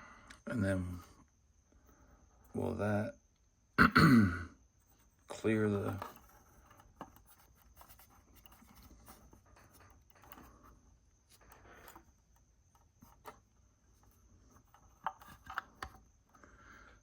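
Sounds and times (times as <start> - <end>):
plastic body rubbing and scraping: 5.3 - 16.1.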